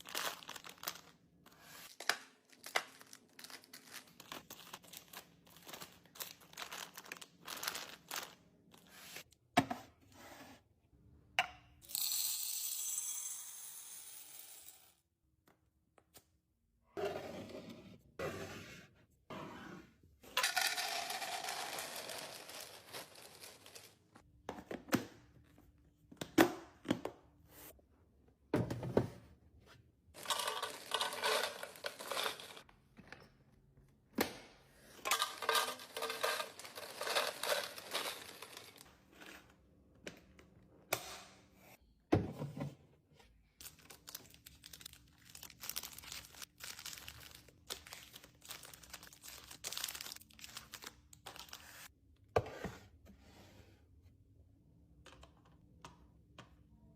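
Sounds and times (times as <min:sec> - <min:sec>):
plastic packaging crinkling and tearing: 0:00.0 - 0:01.1, 0:43.6 - 0:51.6.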